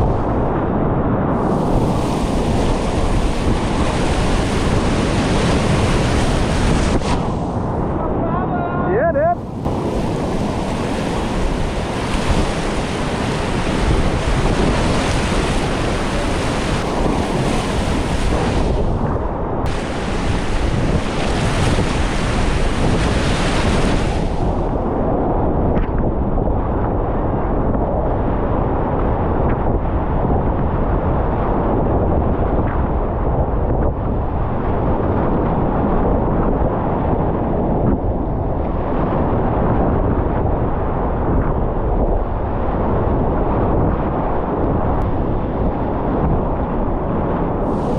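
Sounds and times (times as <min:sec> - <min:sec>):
wind noise on microphone: 0:00.0 - 0:47.9
whitewater rapids rushing: 0:09.2 - 0:18.6, 0:19.7 - 0:24.4.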